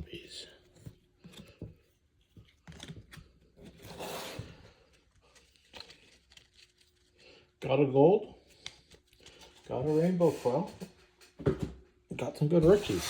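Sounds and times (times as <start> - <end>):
cards and packaging rustling: 0.0 - 7.6, 8.4 - 11.0.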